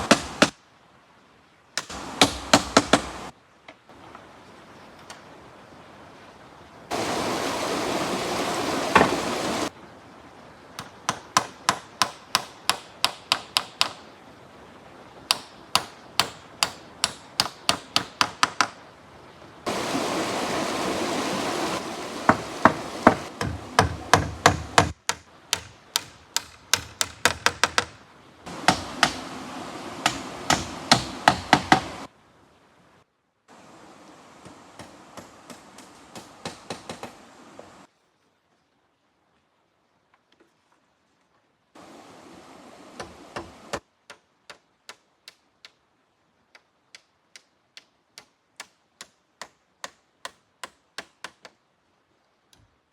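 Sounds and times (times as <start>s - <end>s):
tool striking wood: 0.0s - 0.5s, 1.8s - 3.2s, 8.9s - 9.3s, 22.2s - 27.9s, 28.6s - 29.3s, 30.0s - 32.0s.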